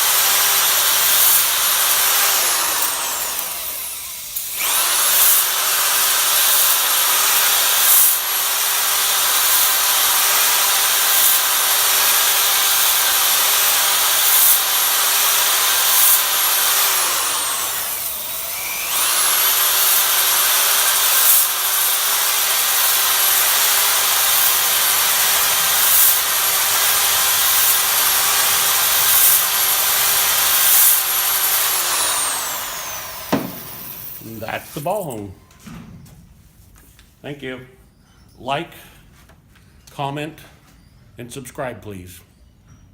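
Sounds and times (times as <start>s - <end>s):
electric drill motor whine: 0.0s - 34.8s.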